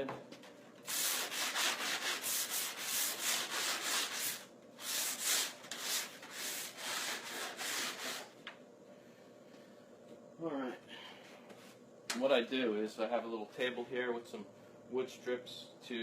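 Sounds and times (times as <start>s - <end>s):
sanding block rubbing on plastic: 0.9s - 8.3s.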